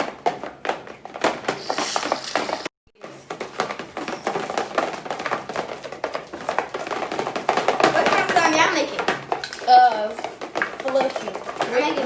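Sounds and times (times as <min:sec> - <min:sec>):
short hiss: 0:01.6 - 0:02.7.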